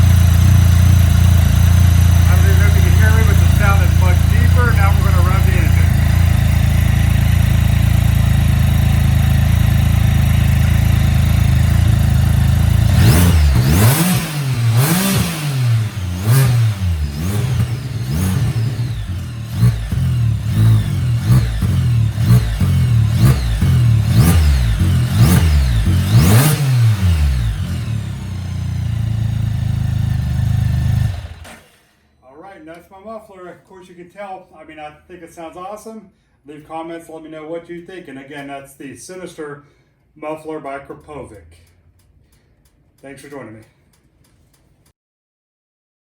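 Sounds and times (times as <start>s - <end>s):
motorcycle engine revving: 0.0s - 32.0s.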